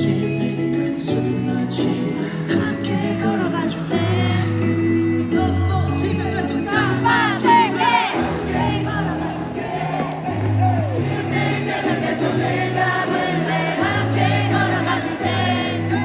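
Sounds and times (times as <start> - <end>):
crowd noise: 0.0 - 16.0
crowd singing along: 0.0 - 16.0
live pop music over sound system: 0.0 - 16.0.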